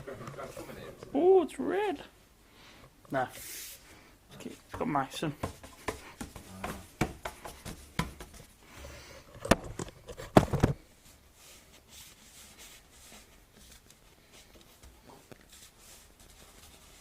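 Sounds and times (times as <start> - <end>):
objects knocking and clattering: 4.7 - 8.5, 9.3 - 10.9.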